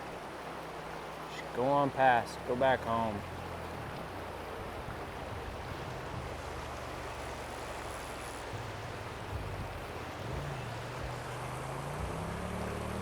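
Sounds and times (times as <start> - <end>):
river rushing: 0.0 - 13.0
vehicle engine driving past: 6.0 - 13.0.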